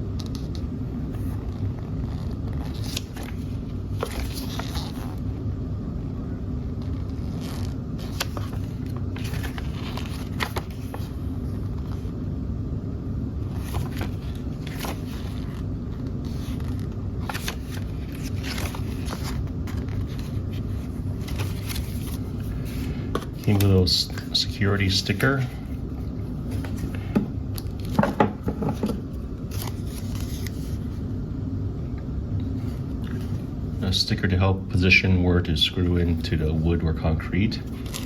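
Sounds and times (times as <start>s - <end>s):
low background rumble: 0.0s - 38.0s
paper pages rustling: 0.2s - 5.2s, 6.8s - 12.1s, 13.4s - 31.0s, 32.6s - 34.0s, 37.6s - 38.0s.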